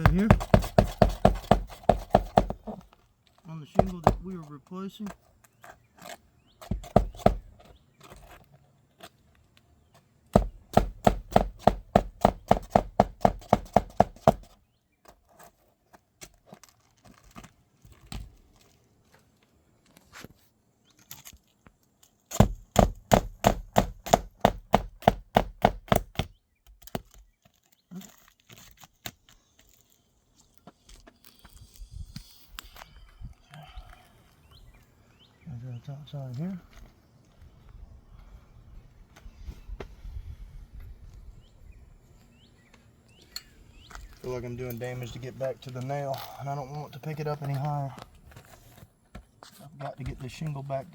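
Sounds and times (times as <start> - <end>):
hammer striking shingle roof: 0.0 - 2.8, 3.7 - 4.4, 6.6 - 7.7, 10.3 - 14.6, 22.3 - 27.2.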